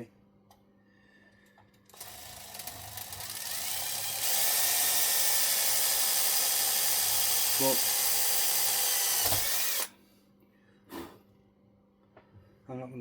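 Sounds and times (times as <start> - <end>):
electric drill drilling into aluminium: 2.0 - 9.9.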